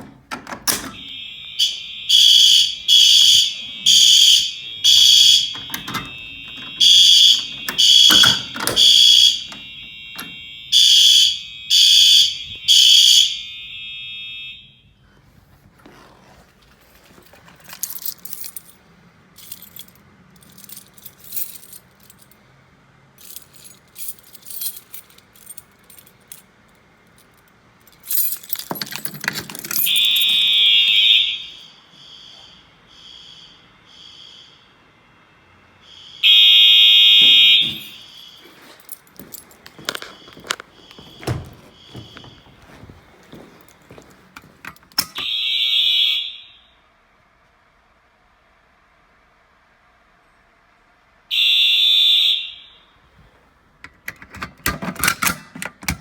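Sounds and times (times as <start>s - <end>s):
clicking and rattling: 0.0s - 1.0s, 27.9s - 30.0s, 37.6s - 45.3s
fire alarm horn blasts: 0.7s - 15.2s, 29.7s - 47.1s, 51.3s - 53.3s.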